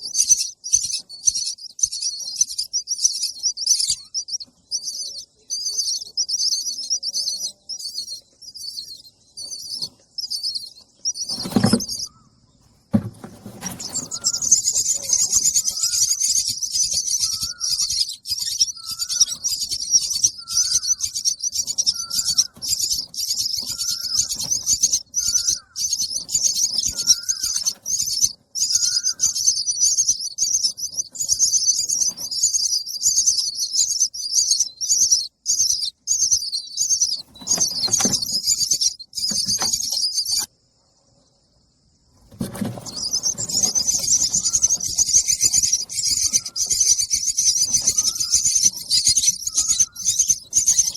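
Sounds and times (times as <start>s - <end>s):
baby birds chirping: 0.0s - 40.5s, 42.2s - 50.9s
thump: 12.9s - 14.2s
lower bird call: 13.6s - 40.5s, 42.6s - 50.9s.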